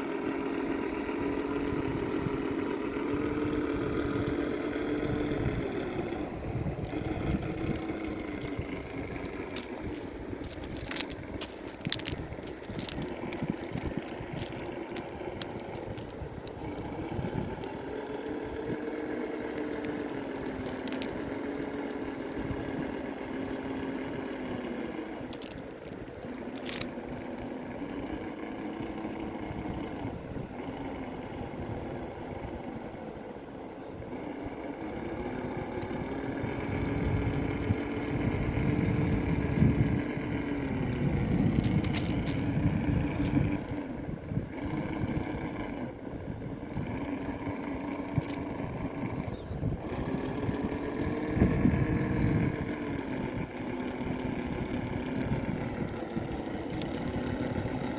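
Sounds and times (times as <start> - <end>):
toy car motor whine: 0.0 - 30.4, 33.6 - 57.9
low rumble: 4.8 - 21.3
clicks and scrapes: 6.8 - 16.8, 19.6 - 21.2, 24.3 - 27.0.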